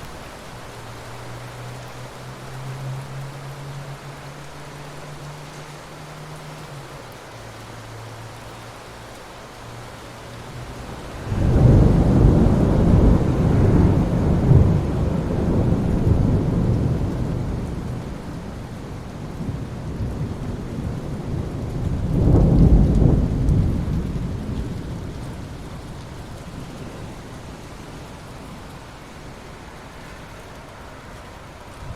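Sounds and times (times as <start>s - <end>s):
steady rain: 0.0s - 31.9s
thunder rumbling: 10.8s - 28.7s.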